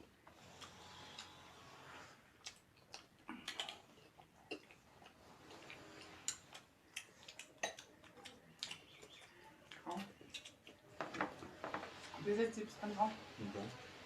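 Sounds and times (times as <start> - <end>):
chewing and mouth noises: 2.3 - 11.4.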